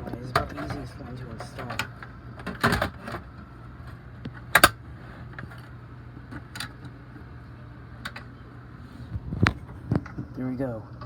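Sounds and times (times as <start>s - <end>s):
power supply clicking into case: 4.5s - 4.8s.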